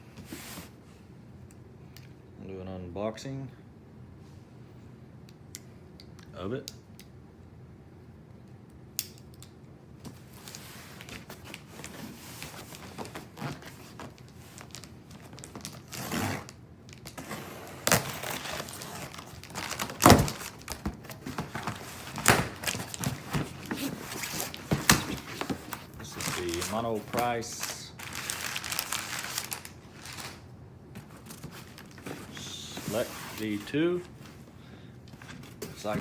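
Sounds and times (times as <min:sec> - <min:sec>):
packing rustling and crinkling: 0:10.1 - 0:36.0.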